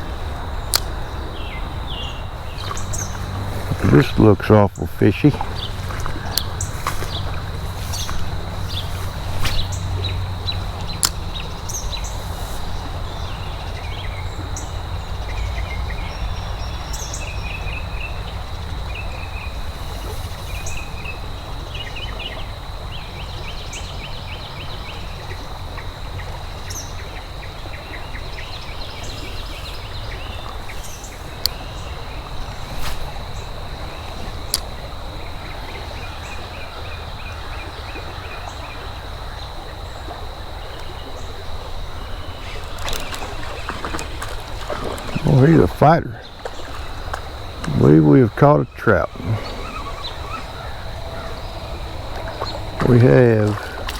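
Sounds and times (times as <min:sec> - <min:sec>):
birds chirping: 0:00.0 - 0:53.9
low creek rumble: 0:00.0 - 0:53.9
sharp clicks: 0:00.7 - 0:01.0, 0:11.0 - 0:11.2.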